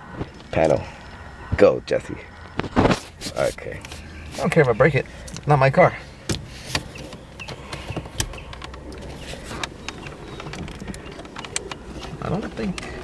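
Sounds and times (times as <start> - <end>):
plastic trim panel clicking and creaking: 6.3 - 13.0.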